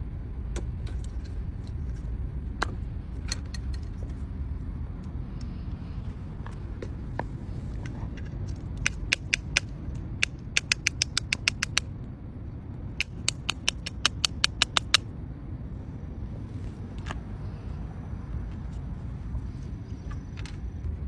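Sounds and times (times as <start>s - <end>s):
steady low rumble: 0.0s - 21.0s
fuel cap ratchet clicking: 8.8s - 11.9s, 13.0s - 15.0s.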